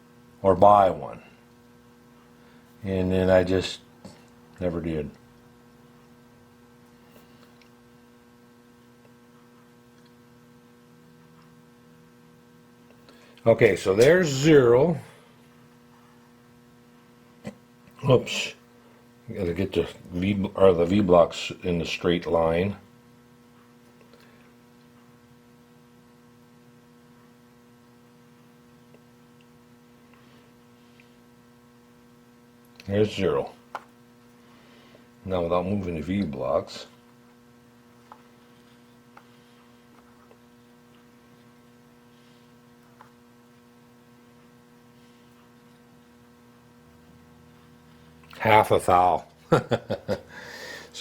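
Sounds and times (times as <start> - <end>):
faint mains hum: 0.0 - 51.0.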